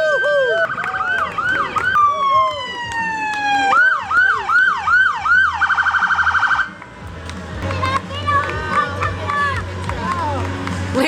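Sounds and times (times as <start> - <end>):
emergency vehicle siren: 0.0 - 6.8.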